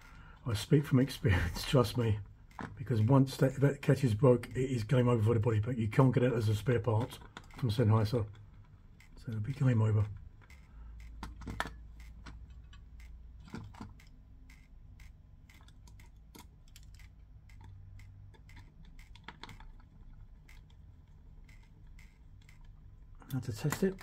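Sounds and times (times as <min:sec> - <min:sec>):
low steady hum: 0:00.0 - 0:24.0
plastic transmitter clicks and taps: 0:01.9 - 0:03.6, 0:06.6 - 0:24.0.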